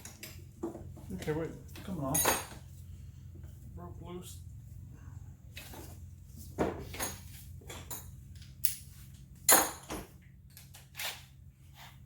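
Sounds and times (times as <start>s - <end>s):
metal tools clinking: 0.0s - 0.5s, 1.2s - 2.7s.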